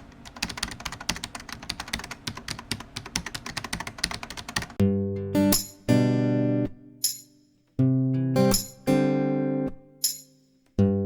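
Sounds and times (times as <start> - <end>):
fast typing on keyboard: 0.2 - 4.8
plucked guitar notes: 4.8 - 7.2, 7.8 - 10.2, 10.8 - 11.0.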